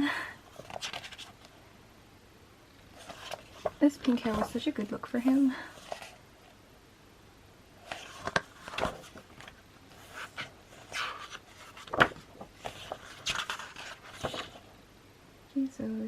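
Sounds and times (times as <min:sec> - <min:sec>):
photobook pages turning: 0:00.5 - 0:01.5, 0:02.9 - 0:06.2, 0:07.8 - 0:14.7.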